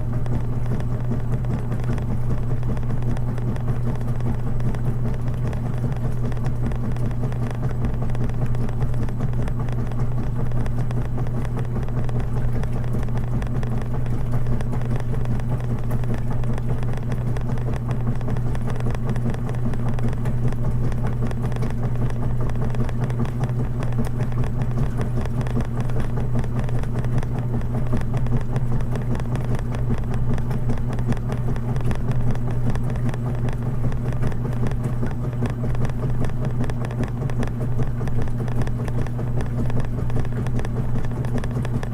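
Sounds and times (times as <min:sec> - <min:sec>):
washing machine drone: 0:00.0 - 0:41.9.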